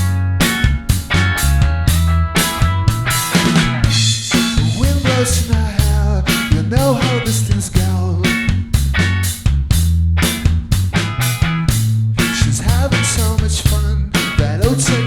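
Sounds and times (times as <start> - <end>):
bending pitched instrument lines: 0.0 - 9.3
bass line: 0.0 - 15.0
drum kit beat: 0.0 - 15.0.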